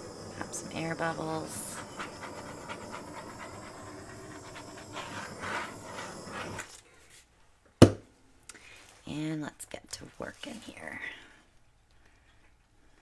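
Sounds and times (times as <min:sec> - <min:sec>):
butane torch hissing: 0:00.0 - 0:06.8.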